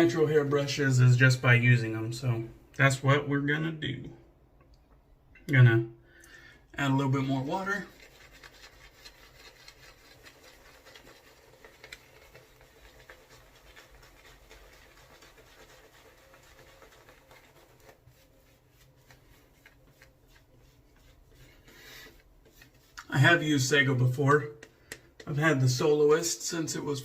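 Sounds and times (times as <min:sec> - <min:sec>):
shaving brush swishing lather: 0:07.2 - 0:24.4.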